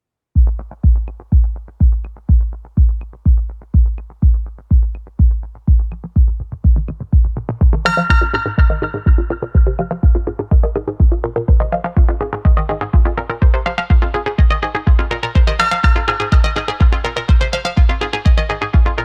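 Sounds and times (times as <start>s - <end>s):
bass kick drum: 0.4s - 19.0s
bright synth: 7.9s - 19.0s.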